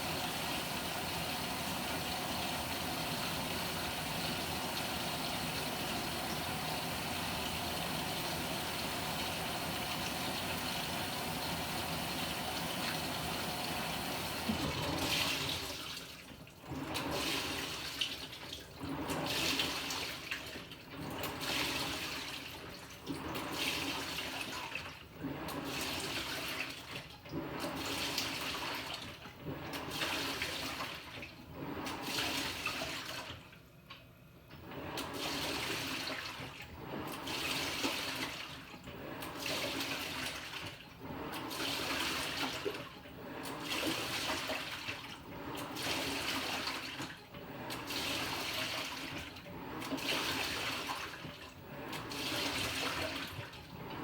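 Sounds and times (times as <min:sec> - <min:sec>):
washing machine water sloshing: 0:00.0 - 0:54.0.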